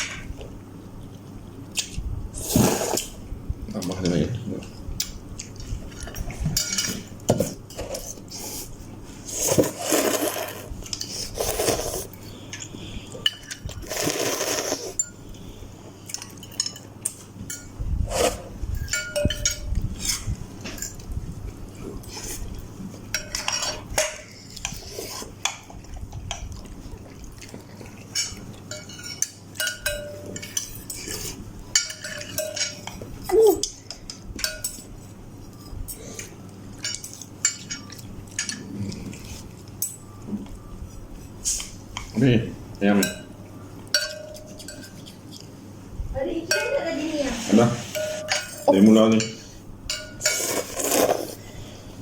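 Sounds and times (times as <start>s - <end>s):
cutlery clinking against bowl: 5.0s - 8.2s, 16.1s - 21.0s, 23.1s - 24.8s, 27.4s - 40.3s, 42.9s - 45.5s, 47.9s - 51.2s.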